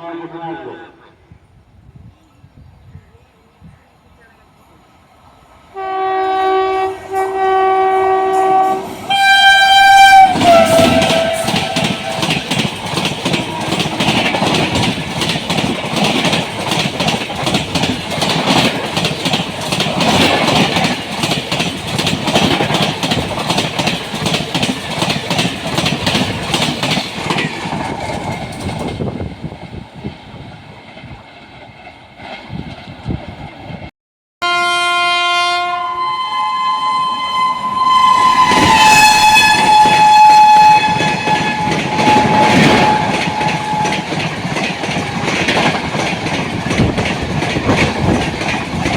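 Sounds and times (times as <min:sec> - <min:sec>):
train passing with wheel clatter: 0:03.6 - 0:33.9, 0:35.2 - 0:48.9
train horn blast: 0:05.7 - 0:12.6, 0:13.3 - 0:14.2, 0:34.4 - 0:44.2.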